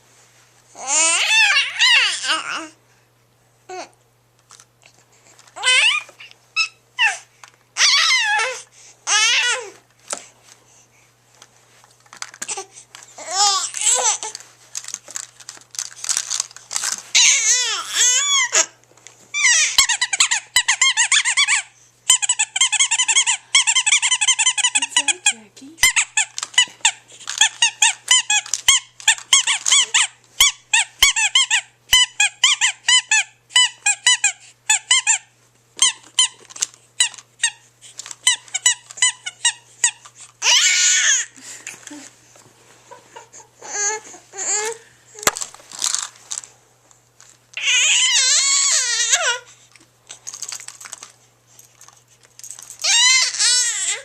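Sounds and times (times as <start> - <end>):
baby squealing: 0.8 - 2.6, 5.6 - 7.2, 7.8 - 9.7, 13.2 - 14.4, 17.1 - 24.9, 38.2 - 41.4, 47.6 - 49.5, 52.8 - 54.0.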